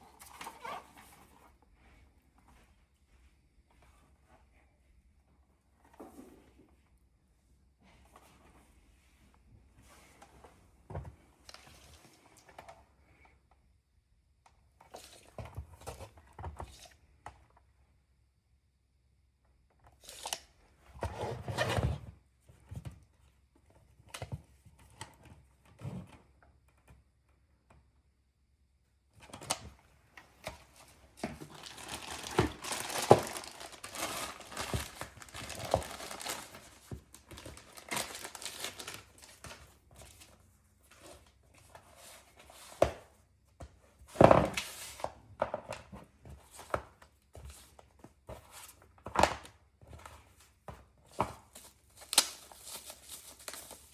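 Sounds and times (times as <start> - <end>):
plastic packaging crinkling: 31.2 - 39.6.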